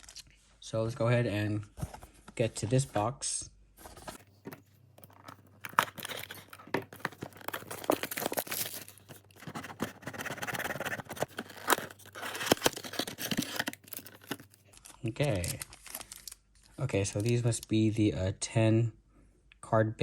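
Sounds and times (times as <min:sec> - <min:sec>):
packaging tearing and crinkling: 0:05.0 - 0:16.4.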